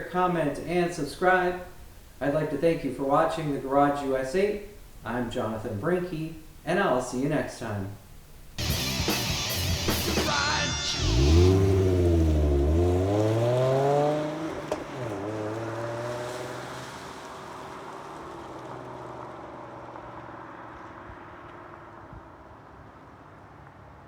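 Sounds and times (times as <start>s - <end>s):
car engine accelerating: 8.6s - 22.3s.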